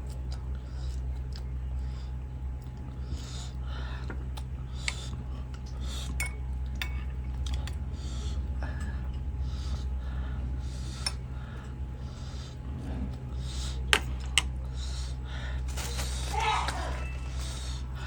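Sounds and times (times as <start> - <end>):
steady low hum: 0.0 - 18.0
cutlery clinking against a dish: 6.2 - 7.8.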